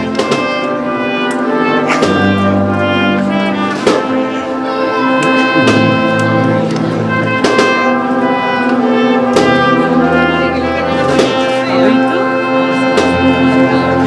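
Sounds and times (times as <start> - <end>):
brass band playing a march: 0.0 - 14.0
sharp percussion strikes: 5.3 - 8.3.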